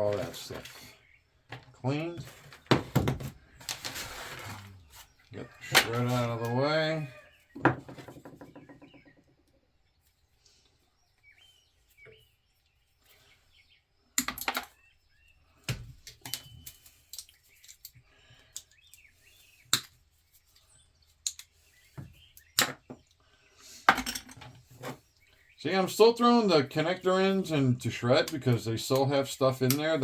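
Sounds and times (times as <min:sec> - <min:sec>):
faint bird chirps: 0:08.4 - 0:23.7.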